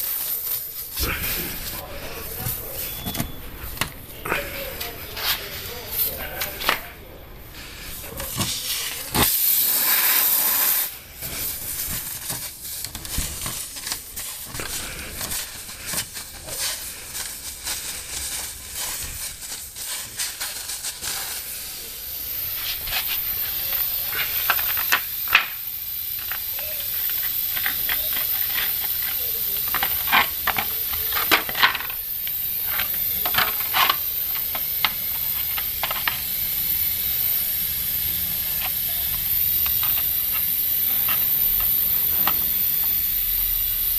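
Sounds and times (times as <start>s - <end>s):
air hissing out of tire: 0.0s - 43.9s
tool scraping and clicking: 26.2s - 36.3s.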